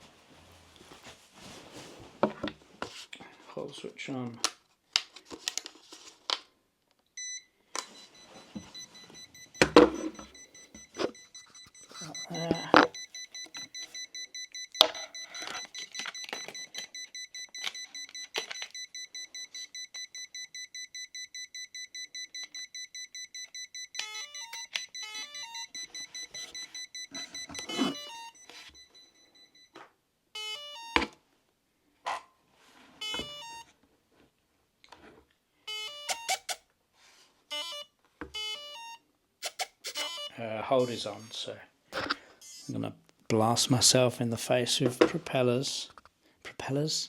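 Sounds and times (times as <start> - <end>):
multi-note electronic tones: 24.0 - 28.9, 33.0 - 33.7, 39.8 - 41.6, 42.4 - 43.0
rapid short electronic beeps: 35.7 - 36.6, 38.5 - 41.5, 42.4 - 42.9.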